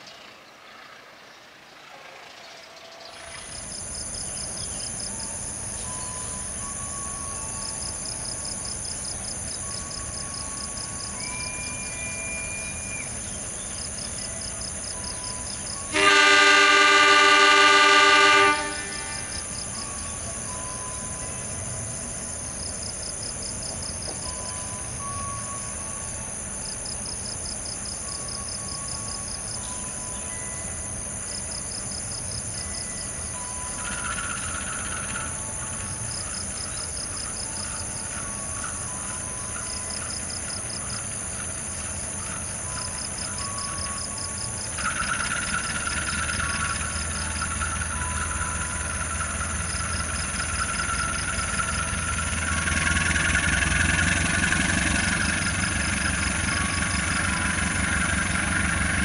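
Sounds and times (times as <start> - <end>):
insects chirping: 0.0 - 59.0
locomotive horn blast: 15.9 - 20.2.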